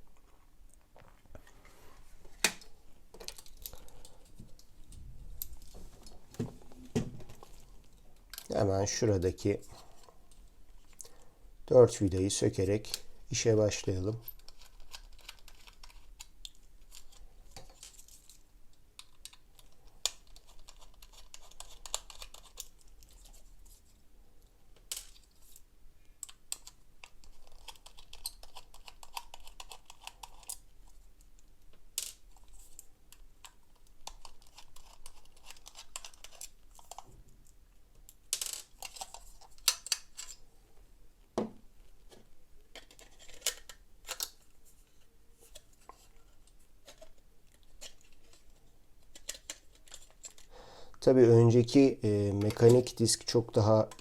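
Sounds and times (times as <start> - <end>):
screwdriver clicking and scraping: 45.5 - 50.5.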